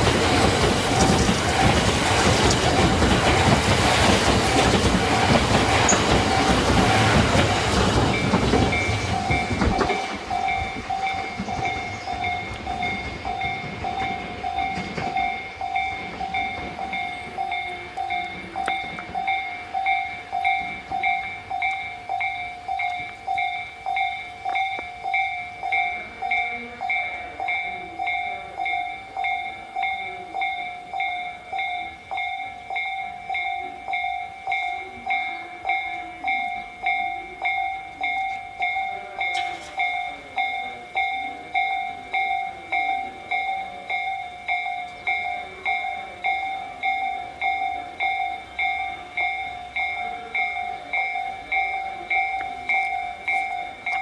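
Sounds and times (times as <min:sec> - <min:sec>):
level crossing warning bell: 0:00.0 - 0:54.0
train passing: 0:00.0 - 0:54.0.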